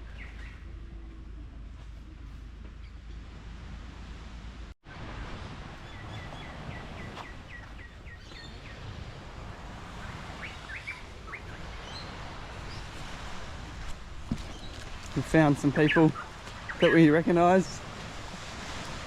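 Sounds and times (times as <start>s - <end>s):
outdoor background noise: 0.0s - 19.0s
bird calling repeated notes: 15.6s - 17.6s.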